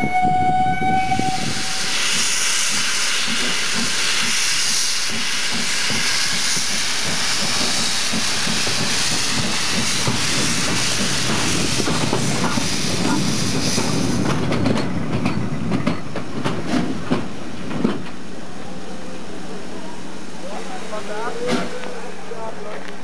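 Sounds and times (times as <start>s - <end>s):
steam locomotive whistle: 0.0s - 7.9s
steam hissing: 0.8s - 22.3s.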